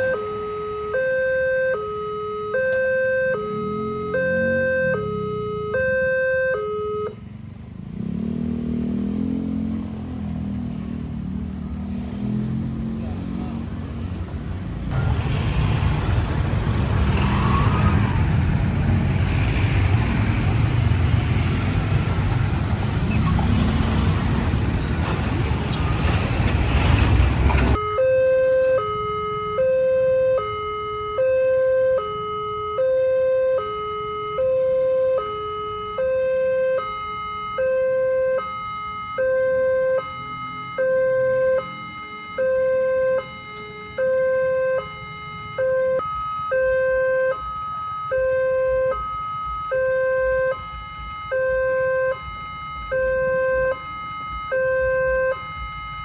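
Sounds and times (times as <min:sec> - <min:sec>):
two-tone level crossing alarm: 0:00.0 - 0:07.2, 0:27.8 - 0:56.0.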